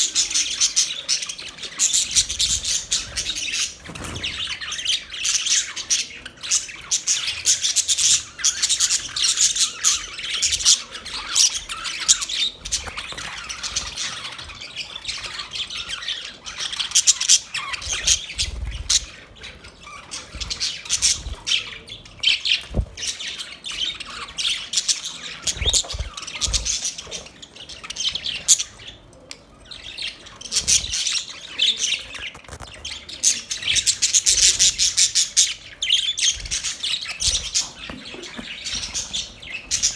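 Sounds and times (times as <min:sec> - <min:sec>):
budgerigars chattering and squawking: 0:00.0 - 0:39.9.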